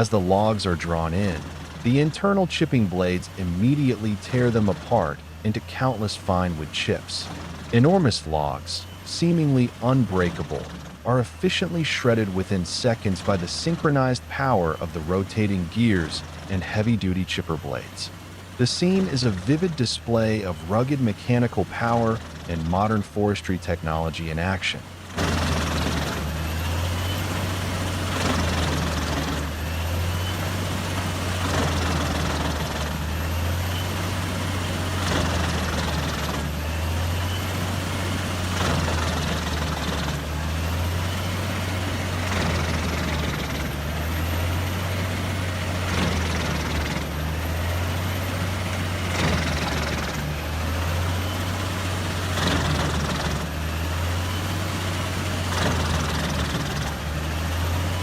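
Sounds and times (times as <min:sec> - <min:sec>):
wood chipper engine hum: 0:00.0 - 0:58.0
chipper grinding: 0:25.1 - 0:58.0.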